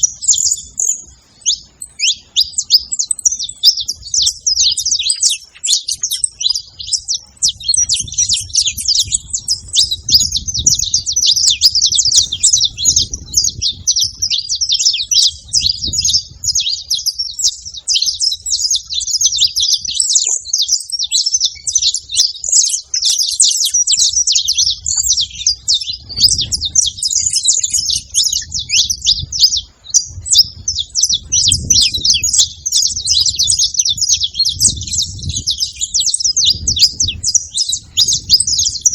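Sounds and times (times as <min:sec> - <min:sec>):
finch singing rapid chirps: 0:00.0 - 0:38.9.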